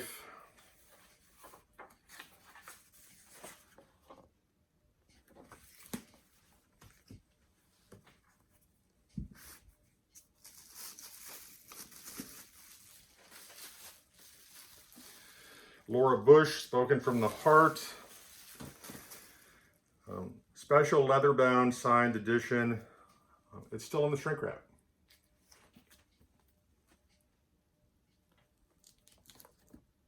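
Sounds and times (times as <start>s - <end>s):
paper and covers rustling: 0.5s - 4.2s, 5.1s - 8.5s, 9.1s - 15.6s, 16.8s - 19.6s.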